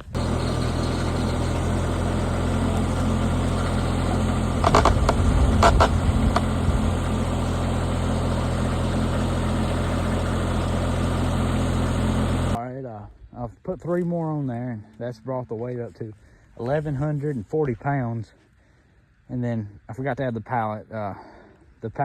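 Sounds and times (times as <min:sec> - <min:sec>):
skid steer engine under load: 0:00.0 - 0:12.6.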